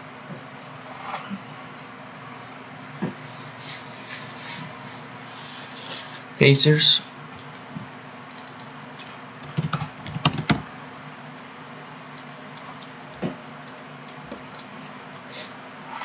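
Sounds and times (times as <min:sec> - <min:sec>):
computer keyboard typing: 0:08.3 - 0:08.7, 0:09.4 - 0:10.6, 0:13.6 - 0:14.7.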